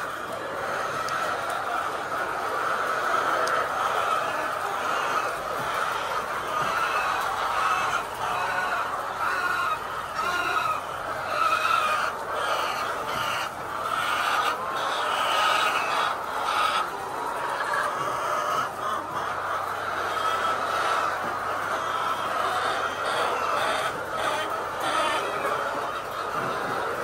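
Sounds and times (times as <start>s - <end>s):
chickens calling: 0.0s - 27.0s.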